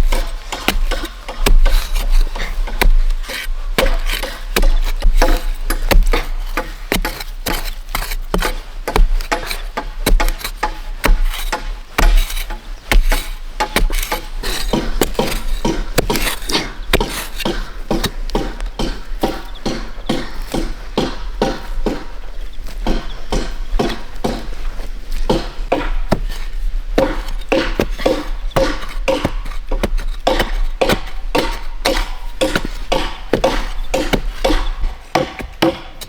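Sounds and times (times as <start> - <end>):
tool knocking on bamboo: 3.8 - 22.1, 27.0 - 36.0.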